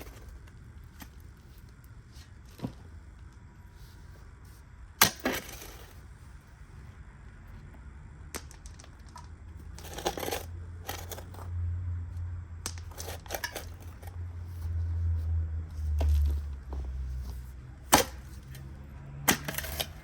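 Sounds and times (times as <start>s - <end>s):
crunching and scraping in soil: 0.0s - 7.8s, 8.6s - 11.6s, 12.8s - 20.0s.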